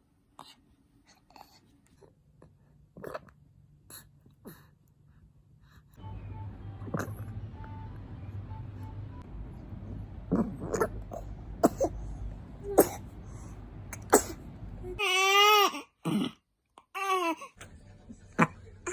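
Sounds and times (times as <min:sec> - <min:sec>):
baby burping: 0:10.3 - 0:13.1, 0:13.9 - 0:16.4
baby crying: 0:14.8 - 0:16.2, 0:16.9 - 0:17.6.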